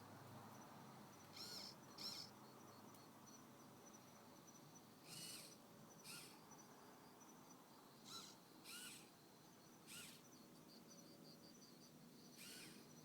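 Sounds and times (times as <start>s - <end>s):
pulsing insect trill: 8.0s - 9.1s, 9.9s - 13.0s
short arched animal calls: 9.9s - 10.2s, 12.4s - 12.9s.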